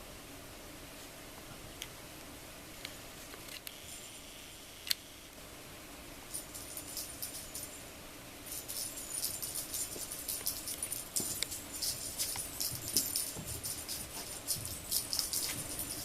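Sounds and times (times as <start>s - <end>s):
small bell jingling: 6.3s - 7.8s, 8.4s - 16.0s.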